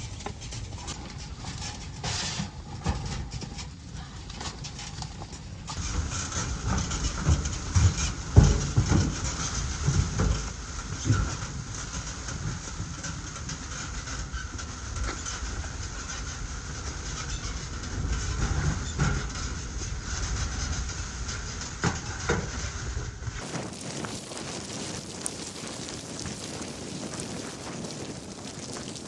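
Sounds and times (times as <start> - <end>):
blizzard wind rumbling: 23.4 - 29.0.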